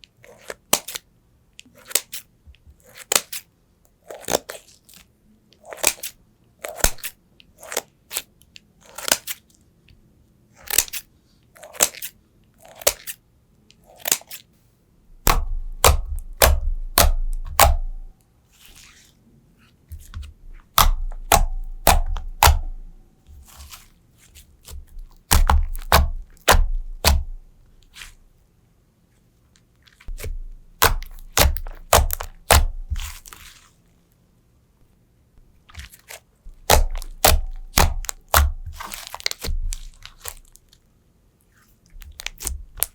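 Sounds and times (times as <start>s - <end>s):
low thuds: 15.2s - 18.1s, 24.7s - 27.6s, 30.1s - 33.2s
slime popping and crackling: 15.2s - 18.1s, 19.9s - 23.9s, 24.6s - 28.2s, 30.1s - 33.6s, 35.7s - 40.7s, 42.0s - 42.9s.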